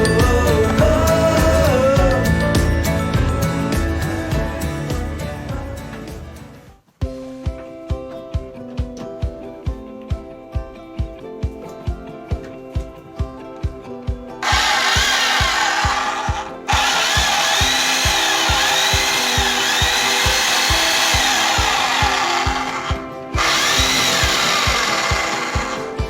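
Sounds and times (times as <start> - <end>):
electric demolition hammer running: 0.0 - 6.3, 14.4 - 26.0
background music with steady beat: 0.0 - 26.0.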